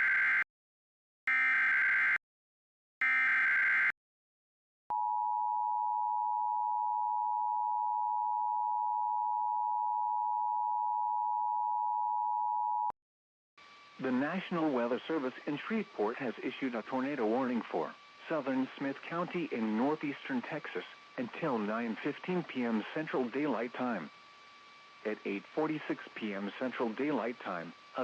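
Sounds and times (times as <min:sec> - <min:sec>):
harsh digital data bursts: 0:14.0 - 0:28.0.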